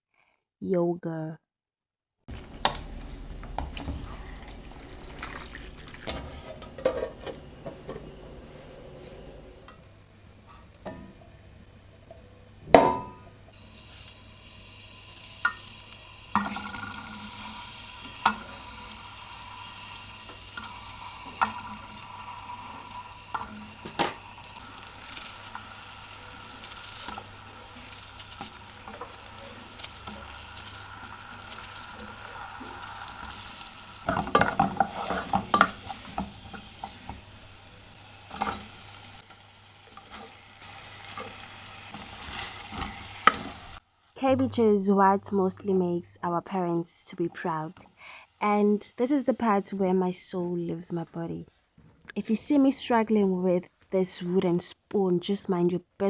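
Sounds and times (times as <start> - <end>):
food sizzling in a pot: 2.3 - 44.2, 47.2 - 49.8
spoon knocking against pot: 12.7 - 13.3
spoon scraping pot: 32.6 - 37.2.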